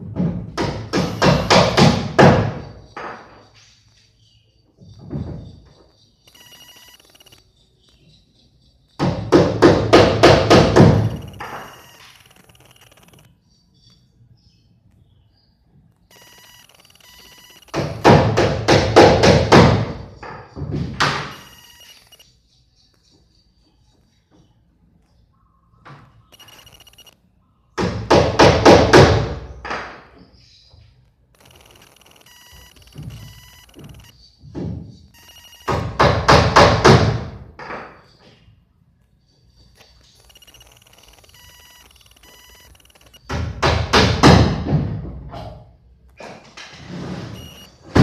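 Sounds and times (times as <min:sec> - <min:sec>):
loud knocks: 0:00.0 - 0:03.4, 0:09.0 - 0:11.6, 0:17.7 - 0:21.5, 0:27.8 - 0:30.2, 0:32.9 - 0:34.9, 0:35.6 - 0:38.0, 0:43.3 - 0:45.6
sharp ringing knocks: 0:00.0 - 0:03.4, 0:09.0 - 0:11.8
faint steady ringing tone: 0:06.0 - 0:09.0, 0:10.9 - 0:14.1, 0:15.9 - 0:18.1, 0:21.2 - 0:23.0, 0:26.2 - 0:27.5, 0:31.3 - 0:34.2, 0:35.1 - 0:35.8, 0:39.7 - 0:43.3, 0:47.4 - 0:47.8.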